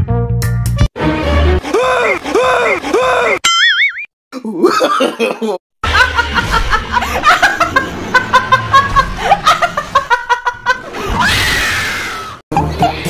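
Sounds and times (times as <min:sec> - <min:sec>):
long falling cry: 0:11.1 - 0:12.4.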